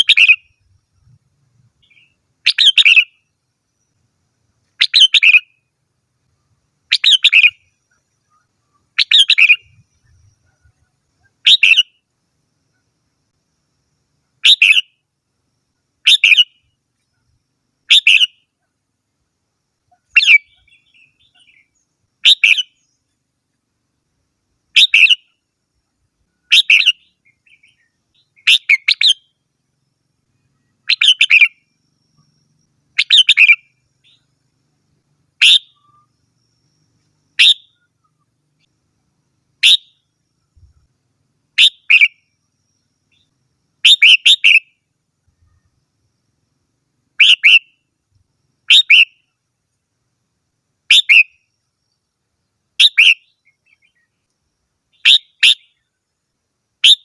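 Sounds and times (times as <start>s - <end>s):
bird singing short phrases: 0.0s - 5.7s, 6.4s - 13.5s, 14.3s - 15.0s, 16.0s - 18.7s, 19.8s - 23.2s, 24.7s - 25.4s, 26.2s - 38.7s, 39.6s - 40.9s, 41.5s - 46.2s, 47.1s - 49.4s, 50.9s - 52.1s, 52.8s - 54.3s, 54.9s - 56.0s.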